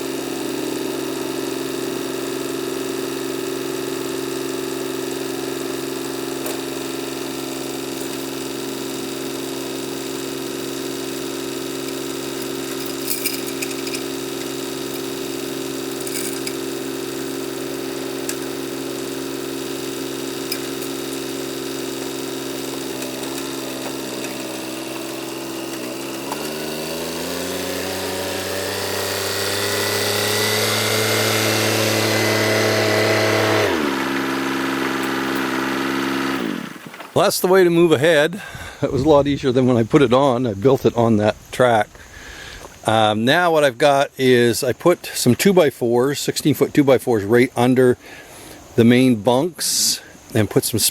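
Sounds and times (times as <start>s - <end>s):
engine idling and revving: 0.0s - 37.2s.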